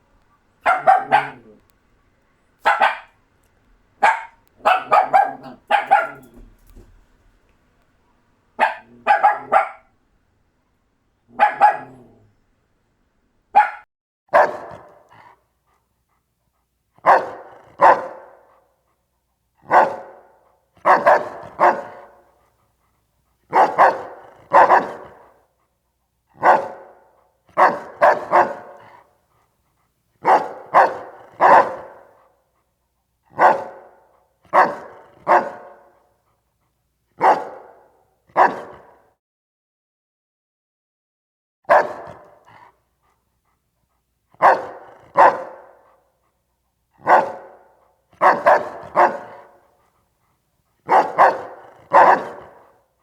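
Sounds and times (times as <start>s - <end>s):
puppies barking: 0.6s - 1.6s, 2.6s - 3.1s, 4.0s - 6.5s, 8.6s - 9.9s, 11.4s - 12.0s, 13.6s - 13.8s, 27.6s - 28.8s.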